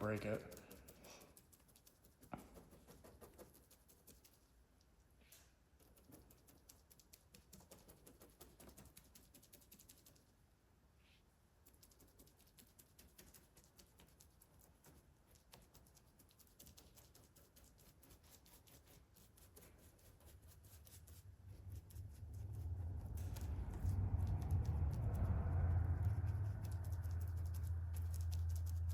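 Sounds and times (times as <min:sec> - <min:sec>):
brush tapping: 0:00.0 - 0:04.5, 0:05.8 - 0:10.3, 0:11.6 - 0:25.2, 0:25.9 - 0:28.9
low hum: 0:20.7 - 0:28.9.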